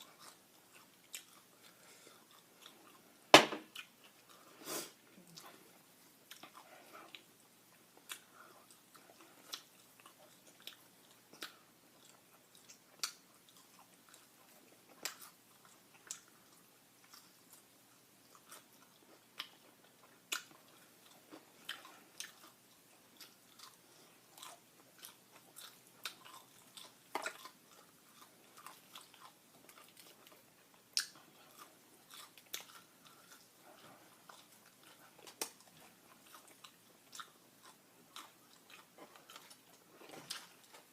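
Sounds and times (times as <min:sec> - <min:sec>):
crunchy chewing: 0:00.0 - 0:40.9.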